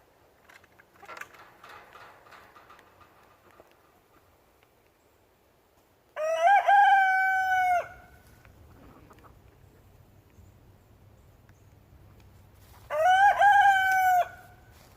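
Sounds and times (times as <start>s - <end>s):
rooster crowing: 6.2s - 8.2s, 12.8s - 14.6s.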